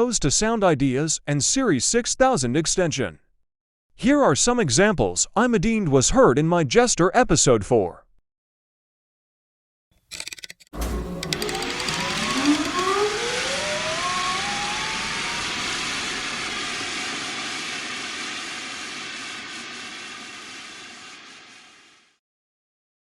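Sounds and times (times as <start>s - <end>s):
electric motor whine: 10.8s - 21.6s
steady rushing noise: 10.8s - 22.2s.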